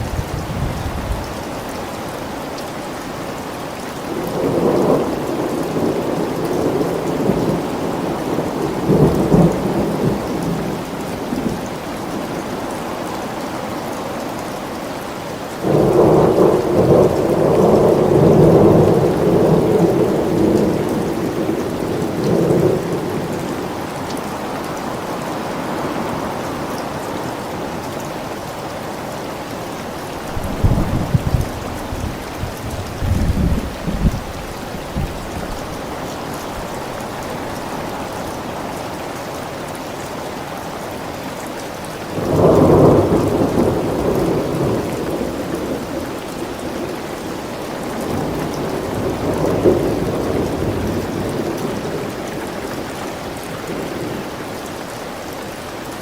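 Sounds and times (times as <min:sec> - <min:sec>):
steady rain: 0:00.0 - 0:56.0
thunder rumbling: 0:30.2 - 0:36.7, 0:42.2 - 0:46.9
loud thunderclap: 0:30.4 - 0:34.3, 0:42.2 - 0:45.7.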